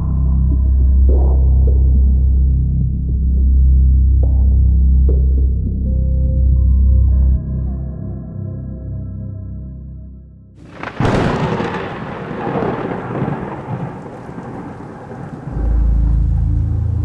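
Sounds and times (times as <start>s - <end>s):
deep low drone: 0.0s - 10.2s, 15.2s - 17.0s
rain hissing: 10.6s - 17.0s
thunderclap rumbling: 10.6s - 17.0s.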